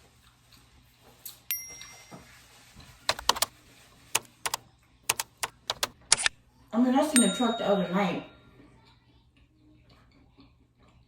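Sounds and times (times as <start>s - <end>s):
light ringing clink: 1.4s - 2.3s, 7.1s - 8.5s
sharp clicks and taps: 3.1s - 3.5s, 4.2s - 6.3s.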